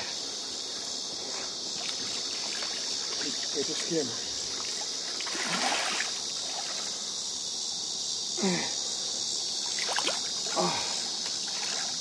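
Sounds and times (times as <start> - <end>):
high insect drone: 0.0 - 12.0
water splashing beside boat: 1.8 - 7.0, 9.6 - 12.0.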